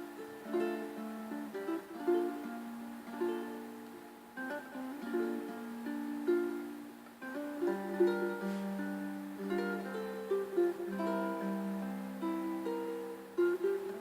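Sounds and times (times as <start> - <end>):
plucked string instrument melody: 0.0 - 14.0.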